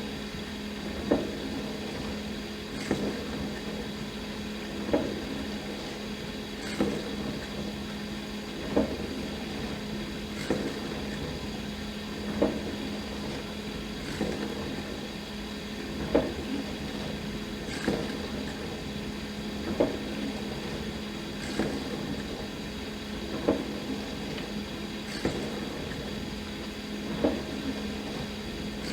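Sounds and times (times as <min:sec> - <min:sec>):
dishwasher pump hum: 0:00.0 - 0:28.9.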